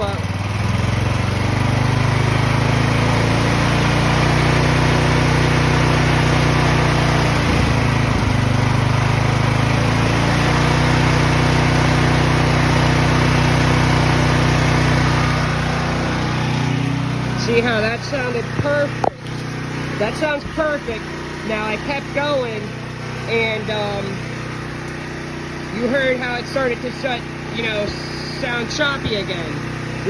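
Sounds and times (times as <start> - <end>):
generator engine running: 0.0 - 30.0.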